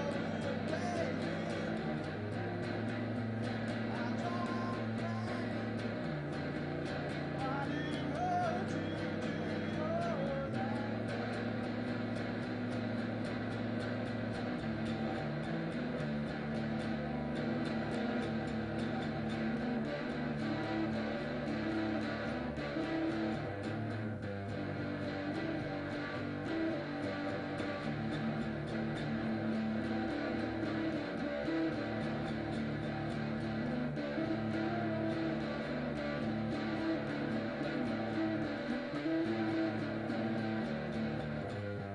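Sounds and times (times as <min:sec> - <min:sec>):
guitar chords: 0:00.0 - 0:41.9.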